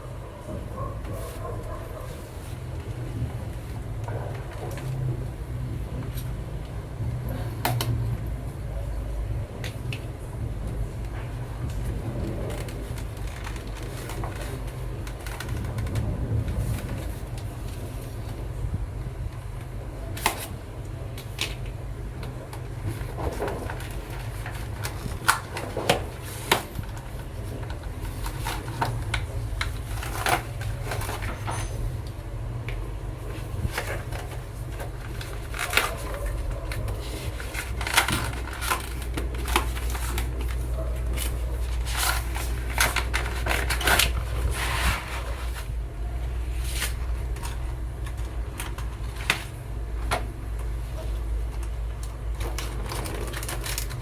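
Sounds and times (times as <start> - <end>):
packaging clicks taps and rustles: 9.6 - 18.5, 19.3 - 44.5, 46.8 - 54.0.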